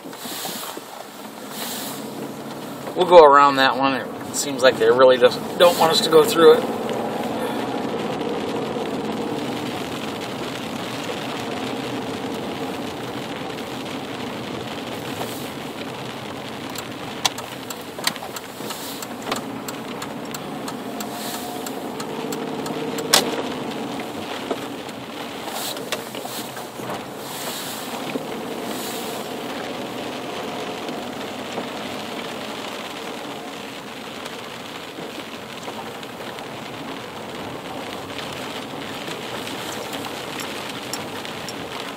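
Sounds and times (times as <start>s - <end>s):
car engine and tyre noise: 0.0s - 41.9s
sharp clicks: 16.7s - 23.3s.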